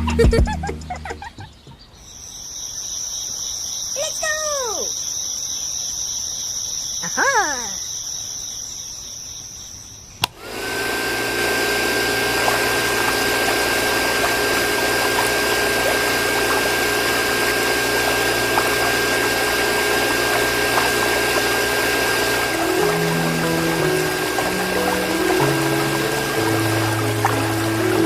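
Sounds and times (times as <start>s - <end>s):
water pump motor whine: 10.2s - 28.0s
rushing hiss of water: 10.4s - 28.0s.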